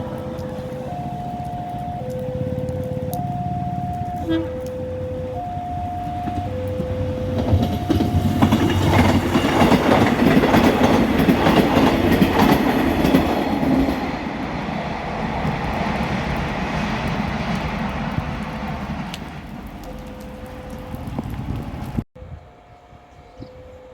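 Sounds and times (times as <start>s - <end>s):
level crossing alarm: 0.5s - 10.9s
train wheels clattering over rails: 6.2s - 19.4s.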